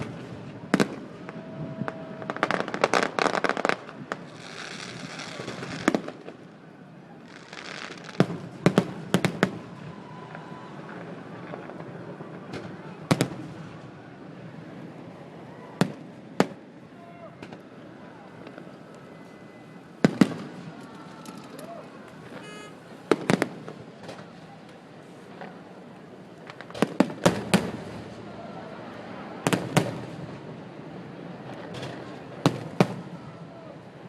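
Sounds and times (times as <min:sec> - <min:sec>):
firework cracks: 0:00.0 - 0:06.5, 0:07.2 - 0:15.0, 0:19.9 - 0:28.4, 0:29.4 - 0:30.6, 0:31.4 - 0:33.4
crackling hiss: 0:00.0 - 0:34.0.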